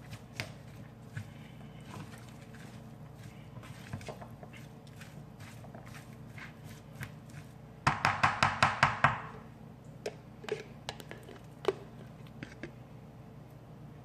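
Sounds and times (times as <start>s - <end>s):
spoon stirring in a bowl: 0.0s - 7.6s, 10.0s - 12.8s.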